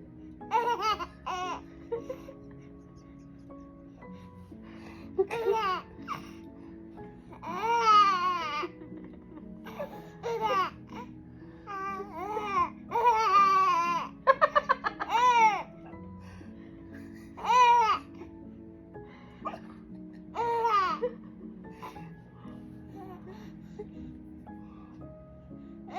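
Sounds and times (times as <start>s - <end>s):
background music: 0.0s - 25.9s
baby laughing: 5.2s - 6.3s, 7.4s - 11.1s, 12.1s - 15.7s.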